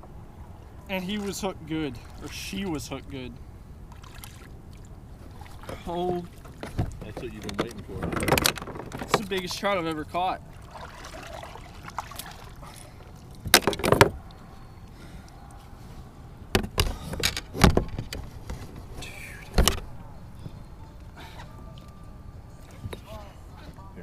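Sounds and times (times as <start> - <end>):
knocks and clunks against kayak: 5.2 - 9.6, 13.4 - 14.2, 16.5 - 20.6.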